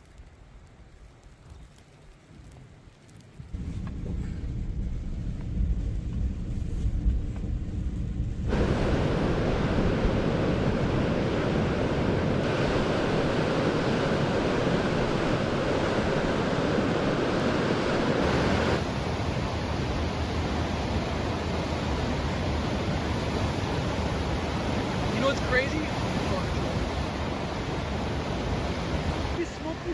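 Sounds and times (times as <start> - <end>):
wind buffeting microphone: 0.8 - 18.9
waves breaking and rushing: 8.4 - 29.9.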